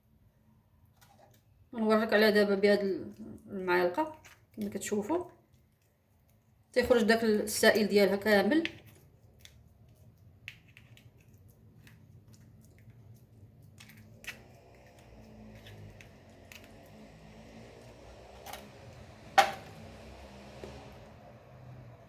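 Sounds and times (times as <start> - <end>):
wet squelching and scraping: 4.0 - 21.2.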